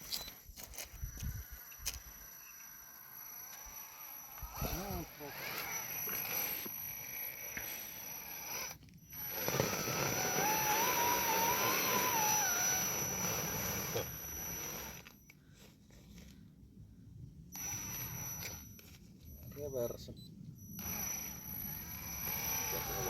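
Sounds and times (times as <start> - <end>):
electric motor and gearbox whining: 0.0 - 15.4, 17.5 - 23.0.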